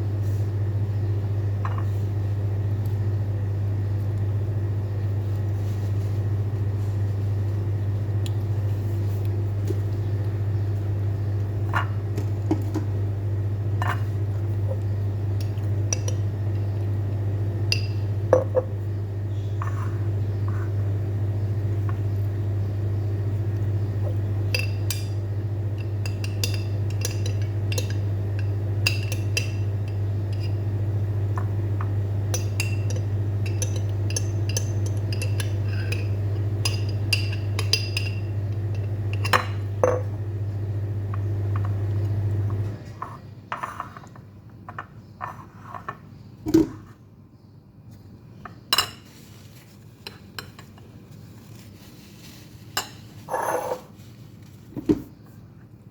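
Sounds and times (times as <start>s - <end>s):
kitchen appliance humming: 0.0s - 43.3s
dishes and cutlery clinking: 32.4s - 39.6s.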